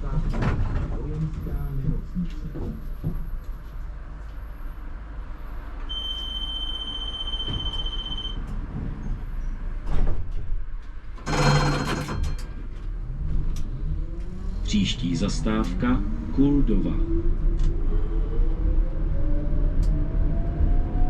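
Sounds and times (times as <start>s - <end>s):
tram running rumble: 0.0s - 21.0s
high beep: 5.9s - 8.4s.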